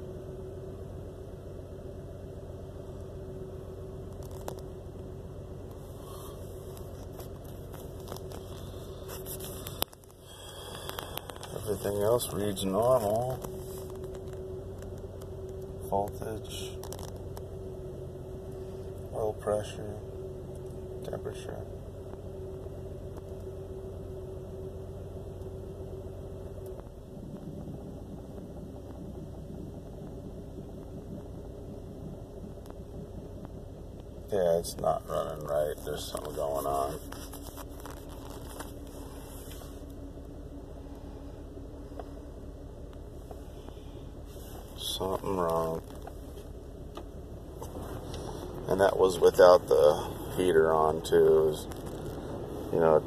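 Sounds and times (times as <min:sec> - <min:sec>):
engine idling rough: 0:00.0 - 0:53.0.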